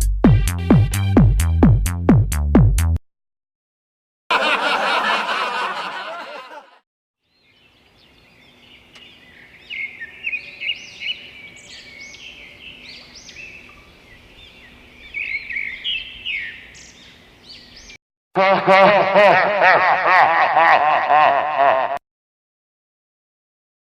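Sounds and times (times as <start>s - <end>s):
songbirds chirping and singing: 7.2s - 18.0s.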